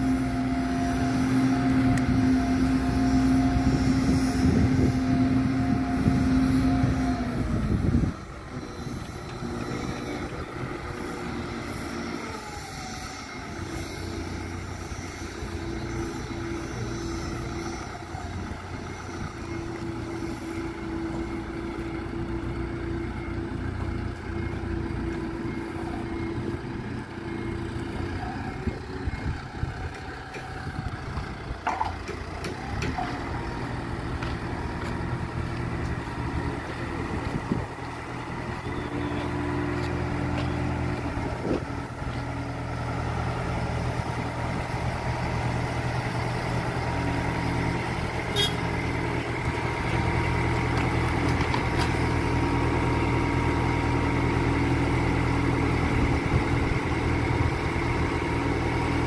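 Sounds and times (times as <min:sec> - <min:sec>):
engine running: 0:00.0 - 0:59.0.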